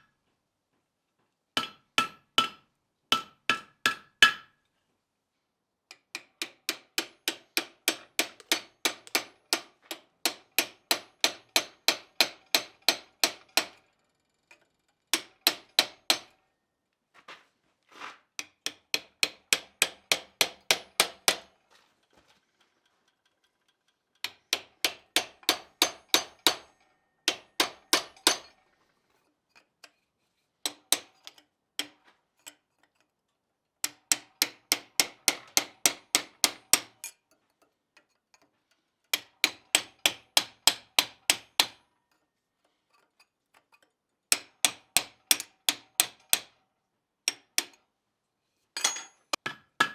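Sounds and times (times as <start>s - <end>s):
hammer striking iron on anvil: 1.6s - 4.5s, 6.2s - 9.7s, 10.3s - 13.8s, 15.2s - 16.3s, 18.4s - 21.5s, 24.2s - 28.6s, 30.7s - 31.2s, 39.1s - 41.8s, 48.8s - 49.9s.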